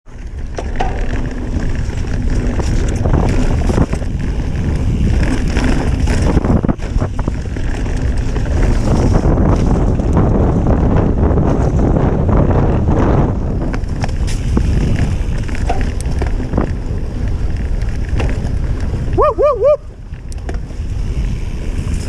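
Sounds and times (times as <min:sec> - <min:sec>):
bike knocking and rattling: 0:00.1 - 0:22.0
tyres rumbling on dirt: 0:00.1 - 0:22.0
wind rushing over microphone: 0:00.1 - 0:22.0.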